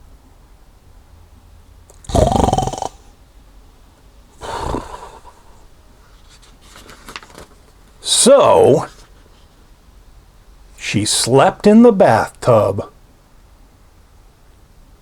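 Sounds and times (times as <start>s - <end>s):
loud snore: 1.9s - 3.1s, 4.4s - 5.6s.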